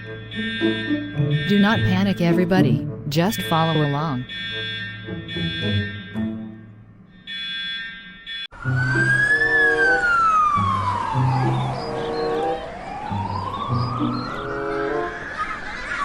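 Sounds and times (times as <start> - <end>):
fire engine siren wailing: 0.0 - 2.3, 3.2 - 6.2, 7.2 - 16.0
low background music: 0.0 - 7.0
fire alarm ringing: 0.0 - 15.4.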